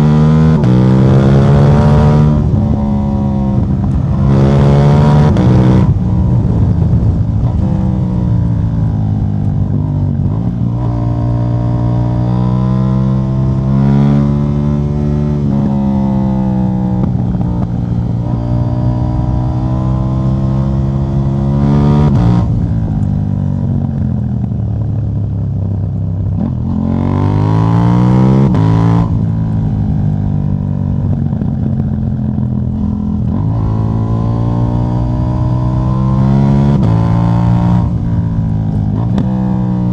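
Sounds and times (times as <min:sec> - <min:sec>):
motorcycle engine revving loudly: 0:00.0 - 0:08.6, 0:32.7 - 0:39.9.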